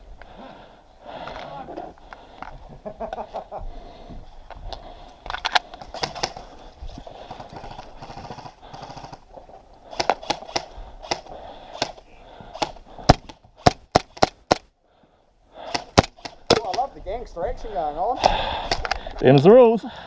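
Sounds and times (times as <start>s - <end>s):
airsoft gun shots: 9.9s - 12.0s, 12.6s - 14.7s, 15.7s - 16.8s.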